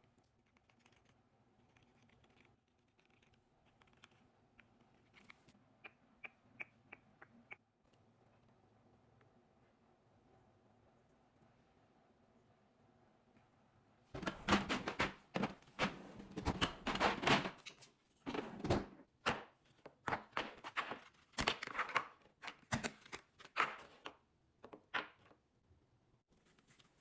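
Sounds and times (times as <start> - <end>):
kitchen containers knocking: 14.2 - 17.6.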